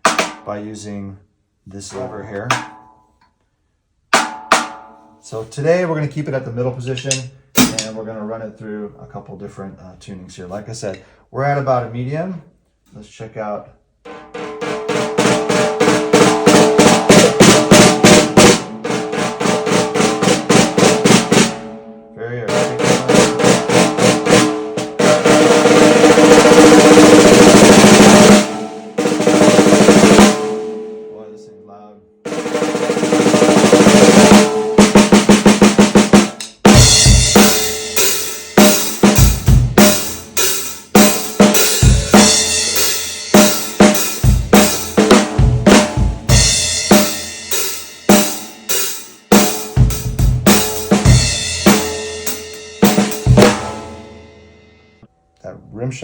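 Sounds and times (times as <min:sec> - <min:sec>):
snare drum roll and strokes: 0:07.0 - 0:08.0, 0:14.3 - 0:21.6, 0:22.5 - 0:30.8, 0:32.3 - 0:54.0
snare drum strokes: 0:07.0 - 0:08.0
bass drum hits: 0:32.3 - 0:38.0, 0:41.0 - 0:47.5, 0:49.6 - 0:54.2.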